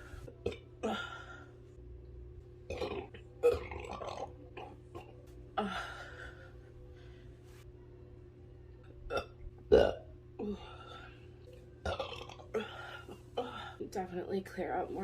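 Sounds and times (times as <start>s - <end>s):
woman belching: 0.4s - 1.1s, 2.7s - 5.2s, 9.1s - 10.6s, 11.8s - 13.6s.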